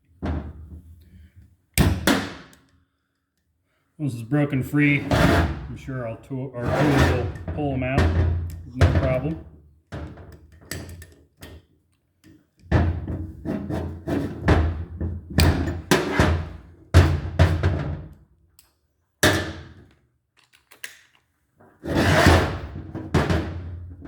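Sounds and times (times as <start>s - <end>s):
metal thunks and knocks: 6.6s - 10.4s, 12.7s - 13.5s, 14.4s - 18.2s, 22.4s - 24.0s.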